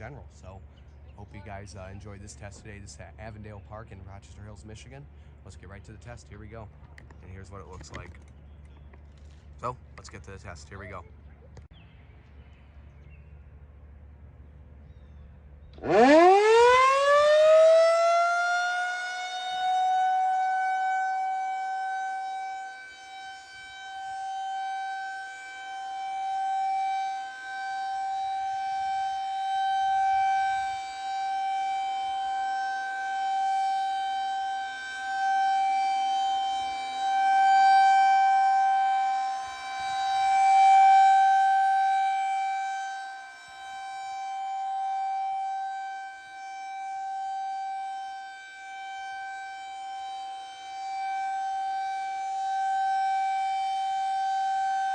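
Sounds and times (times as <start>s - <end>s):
warning siren wailing: 15.8s - 54.9s.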